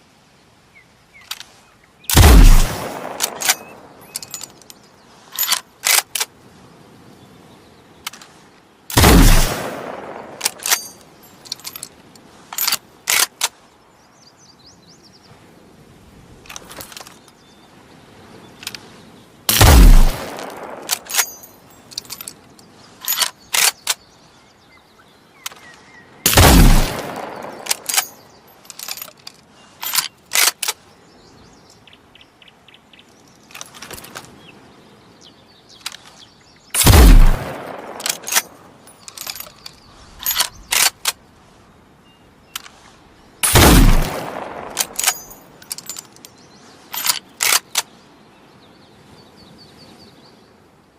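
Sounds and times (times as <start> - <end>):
rifle shot: 2.1 - 3.9, 8.9 - 10.8, 19.5 - 21.3, 26.3 - 28.0, 36.8 - 38.6, 43.4 - 45.2.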